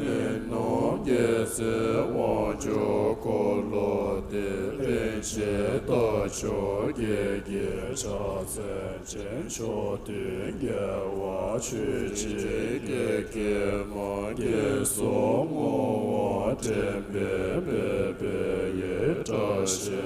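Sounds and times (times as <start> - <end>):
group of voices chanting: 0.0 - 20.0.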